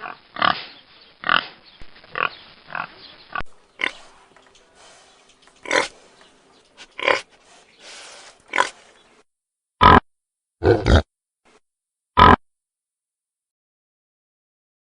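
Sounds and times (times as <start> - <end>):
pigs grunting: 4.8 - 6.1, 6.8 - 9.0, 9.8 - 10.0, 10.6 - 11.1.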